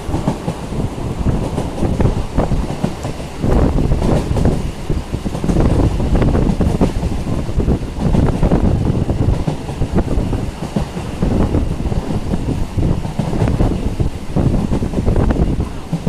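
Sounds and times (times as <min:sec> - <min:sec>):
train rumbling at speed: 0:00.0 - 0:16.0
rattle and knocking of wheels: 0:00.1 - 0:16.0.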